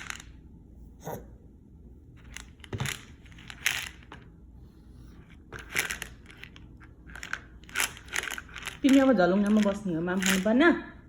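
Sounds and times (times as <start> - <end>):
rustling and clicking handling noises: 2.2 - 4.4, 5.0 - 10.6.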